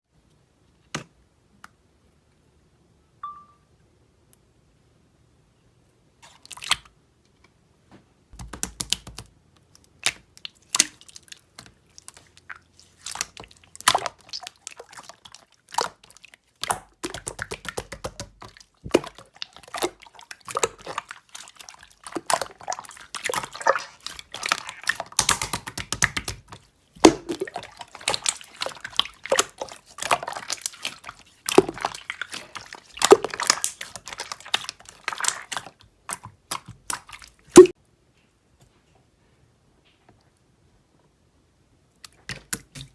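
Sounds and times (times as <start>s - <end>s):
slime squished by hand: 9.8s - 37.8s.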